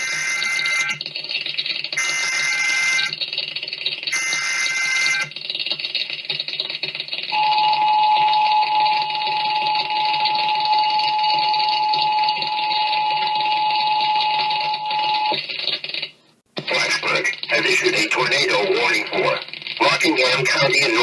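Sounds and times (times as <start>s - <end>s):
long steady alert tone: 7.3s - 15.4s
constant hiss: 15.3s - 21.0s.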